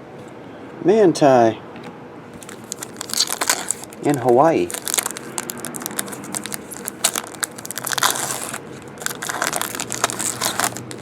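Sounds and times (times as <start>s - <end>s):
trading cards rustling and clicking: 2.4s - 11.0s.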